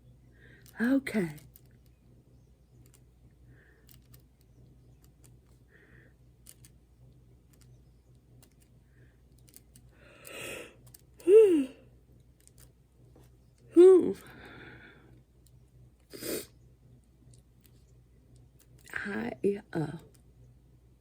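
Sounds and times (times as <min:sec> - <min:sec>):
paper pieces clicking: 0:02.7 - 0:03.1, 0:03.8 - 0:05.6, 0:06.4 - 0:06.8, 0:08.4 - 0:08.7, 0:09.3 - 0:11.3, 0:12.2 - 0:14.3, 0:17.3 - 0:18.9.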